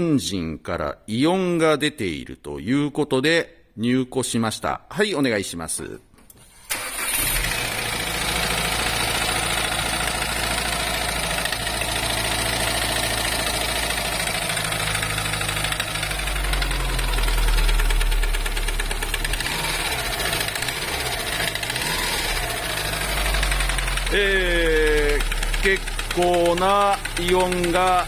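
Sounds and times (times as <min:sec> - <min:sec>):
car engine idling: 0:06.7 - 0:28.0
engine knocking: 0:07.4 - 0:28.0.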